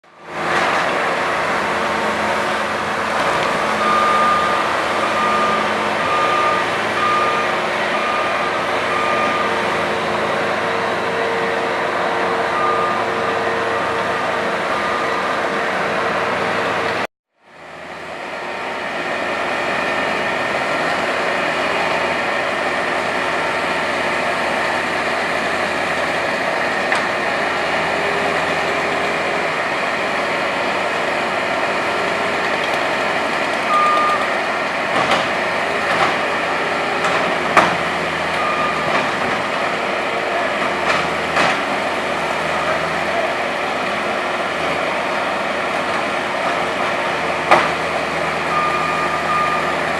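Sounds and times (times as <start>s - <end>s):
loader engine running: 0.1s - 49.9s.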